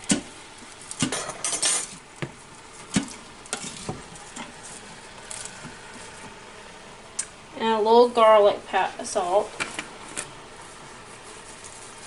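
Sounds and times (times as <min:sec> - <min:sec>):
utensil scraping cooking pan: 0:00.0 - 0:06.4, 0:09.4 - 0:12.0.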